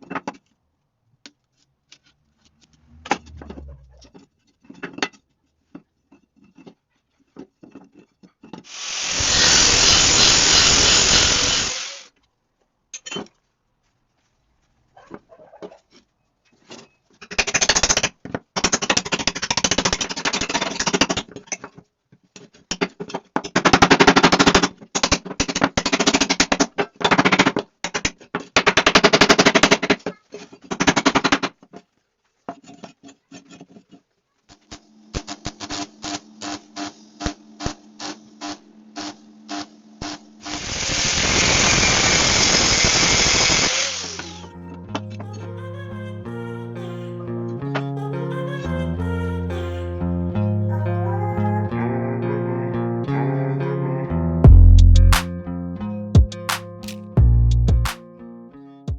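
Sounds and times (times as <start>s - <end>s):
low hum: 2.5s - 4.3s, 44.0s - 52.8s, 54.2s - 55.2s
loud steady hiss: 8.7s - 12.1s, 40.4s - 44.4s
welding arc crackling: 8.7s - 12.1s, 38.4s - 44.4s.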